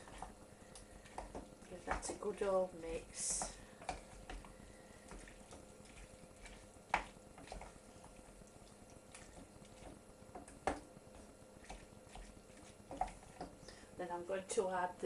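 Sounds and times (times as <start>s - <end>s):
spoon stirring vegetables in saucepan: 0.0s - 13.8s.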